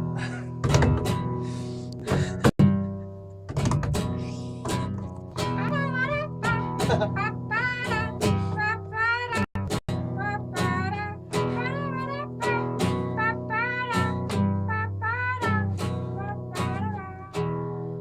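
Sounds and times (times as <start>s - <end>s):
acoustic guitar strumming: 0.0s - 18.0s
person singing wordless melody: 5.4s - 17.7s.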